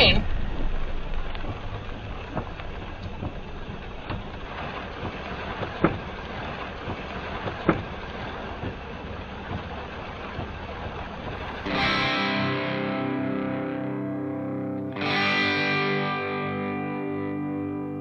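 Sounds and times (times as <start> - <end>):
road and rain noise in vehicle: 0.0 - 12.0
sharp knocks and ticks: 1.1 - 6.1, 6.8 - 8.0.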